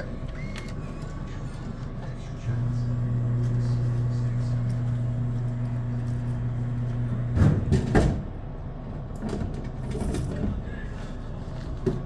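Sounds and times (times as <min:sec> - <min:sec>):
vending machine motor hum: 0:00.0 - 0:08.6.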